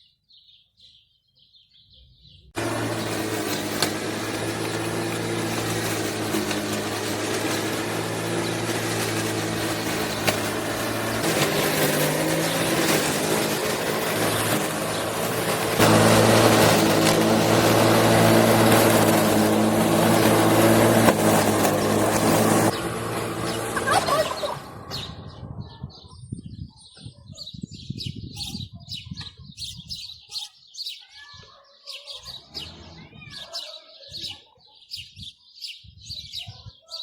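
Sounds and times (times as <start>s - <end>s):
birds chirping: 0.0s - 37.0s
lawn mower engine running: 2.6s - 25.5s, 32.5s - 33.2s.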